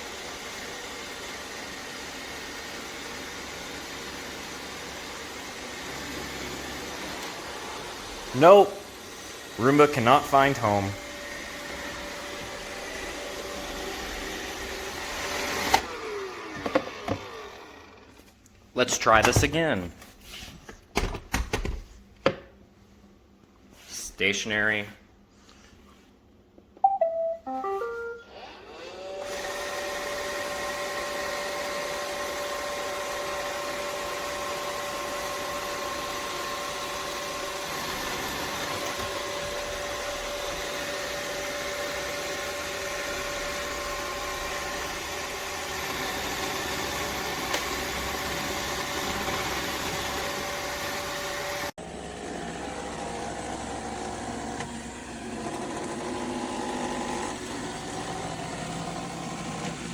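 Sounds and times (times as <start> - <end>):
robot vacuum motors whining: 0.1 - 18.3, 28.3 - 59.9
electronic beep tune: 26.8 - 28.3.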